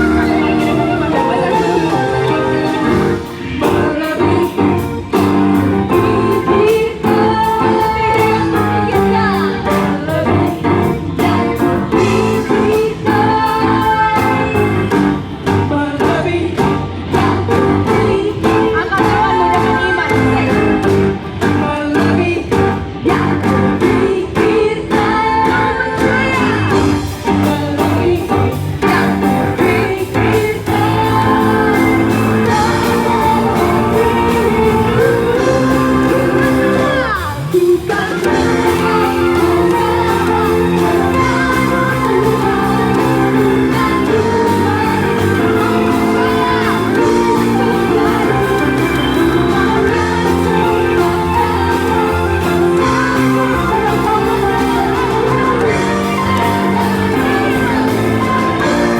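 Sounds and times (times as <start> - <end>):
keyboard chords and band: 0.0 - 58.9
person singing worship song: 15.5 - 58.9.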